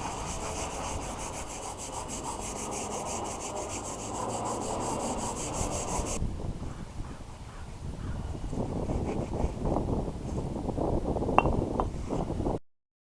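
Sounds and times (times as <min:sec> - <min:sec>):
scouring pad scrubbing brick: 0:00.0 - 0:06.2.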